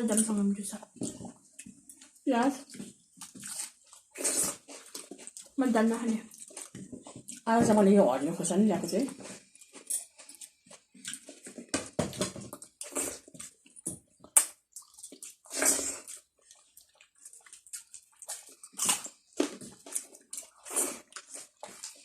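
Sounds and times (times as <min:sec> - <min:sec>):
chewing and lip smacks: 0:06.3 - 0:07.5, 0:09.5 - 0:11.6, 0:12.6 - 0:22.0.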